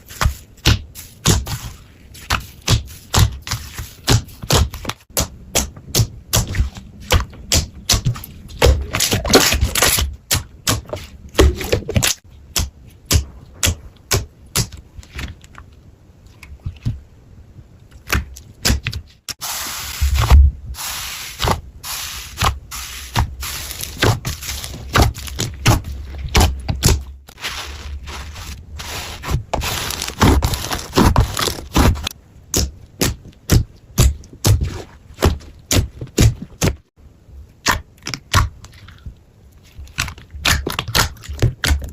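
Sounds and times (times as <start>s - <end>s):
steady hiss: 19.4s - 24.9s
slime clicking and crackling: 39.9s - 41.9s.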